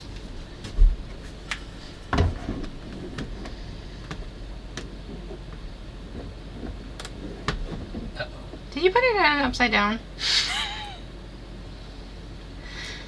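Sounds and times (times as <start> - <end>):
low background hum: 0.0 - 13.0
heavy thump: 2.0 - 3.6.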